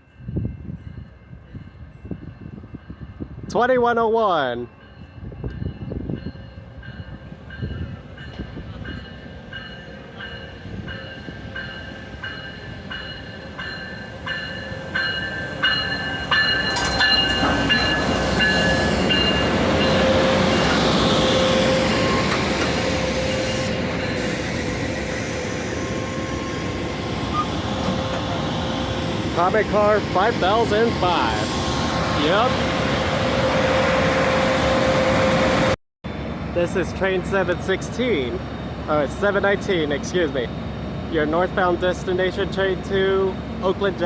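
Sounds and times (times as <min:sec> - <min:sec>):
wheel and brake squeal: 0:19.9 - 0:26.3, 0:27.2 - 0:28.4.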